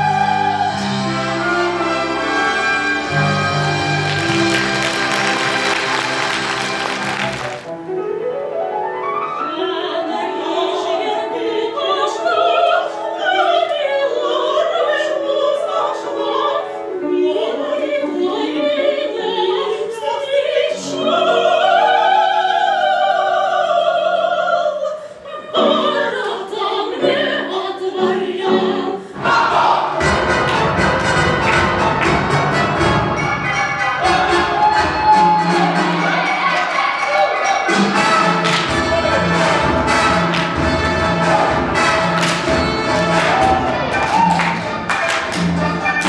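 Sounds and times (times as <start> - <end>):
operatic singing: 0.0 - 7.7, 9.6 - 46.0
classical accompaniment: 0.0 - 19.4, 37.6 - 46.0.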